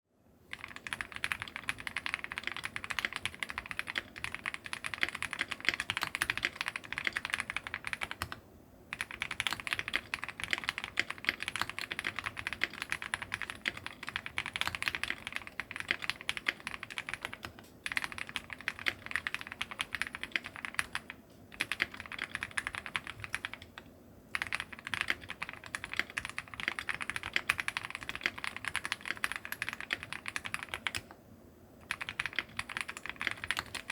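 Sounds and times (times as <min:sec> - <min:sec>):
fast typing on mechanical keyboard: 0:00.5 - 0:31.2, 0:31.8 - 0:33.9.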